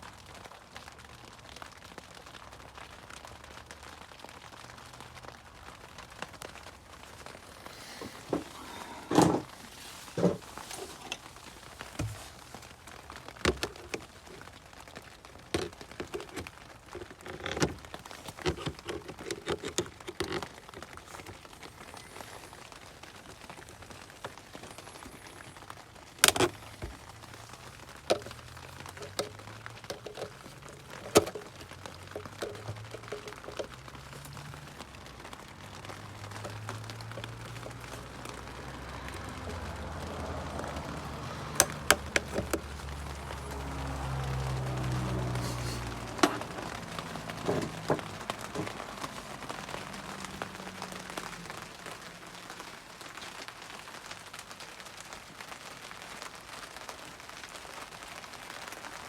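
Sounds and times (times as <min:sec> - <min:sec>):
tools clicking and knocking: 0:28.9 - 0:31.5, 0:41.6 - 0:42.6.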